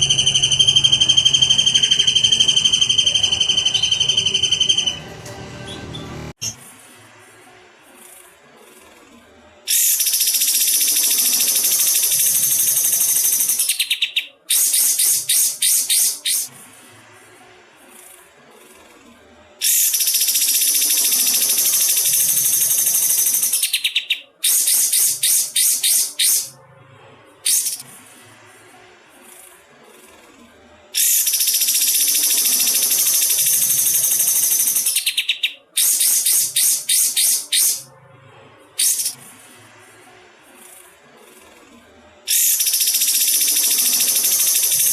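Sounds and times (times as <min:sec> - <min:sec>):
songbird rapid high trill: 0:00.0 - 0:05.0.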